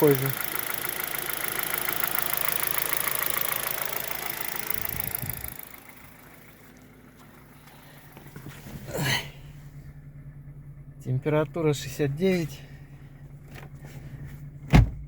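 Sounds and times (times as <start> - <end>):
car engine idling with knock: 0.0 - 15.0
low thump: 14.6 - 15.0.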